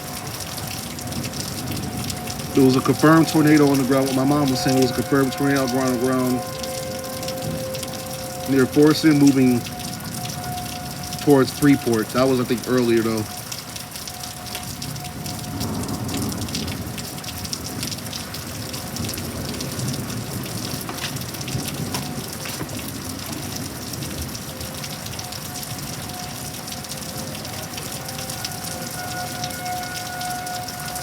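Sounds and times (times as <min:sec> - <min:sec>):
rain pattering: 0:00.0 - 0:31.0
faint steady tone: 0:01.6 - 0:15.7.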